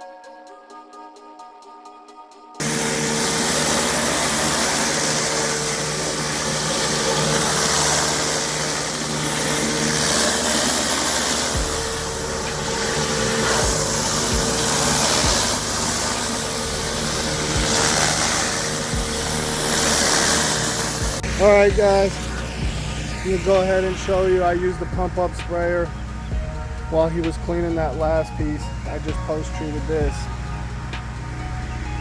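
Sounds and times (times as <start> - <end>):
gas engine running: 2.6 - 32.0
high-pressure water spraying: 2.6 - 32.0
low thumps: 21.0 - 29.3.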